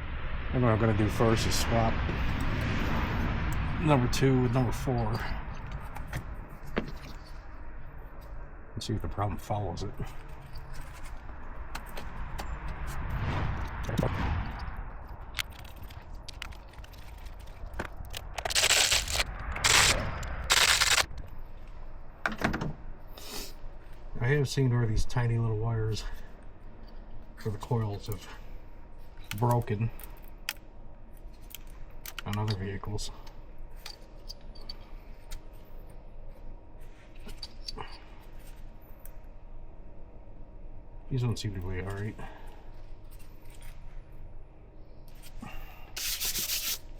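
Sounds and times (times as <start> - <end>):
faint low hum: 0.0 - 46.6
tools and parts clicking and rattling: 15.3 - 21.1, 31.2 - 35.6
loud rasping bursts: 18.3 - 21.1.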